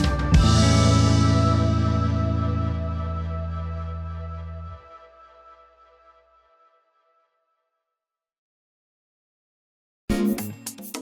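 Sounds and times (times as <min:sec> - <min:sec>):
music with held chords: 0:00.0 - 0:04.7
deep bass: 0:00.0 - 0:05.0.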